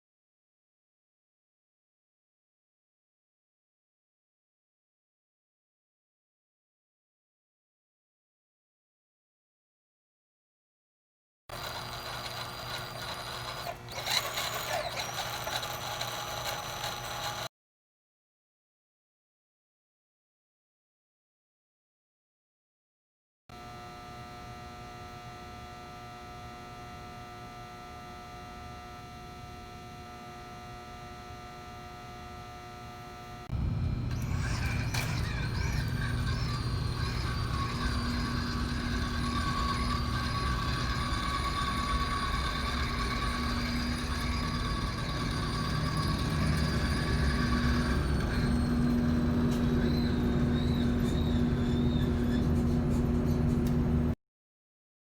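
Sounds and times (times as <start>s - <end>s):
rc car electric motor whining: 11.5s - 17.5s, 23.6s - 54.1s
electrical hum: 23.6s - 54.2s.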